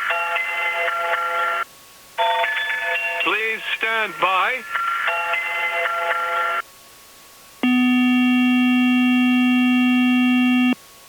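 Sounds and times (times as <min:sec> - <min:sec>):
low electronic buzzer tone: 0:07.6 - 0:10.8
synthesized chord: 0:07.6 - 0:10.8.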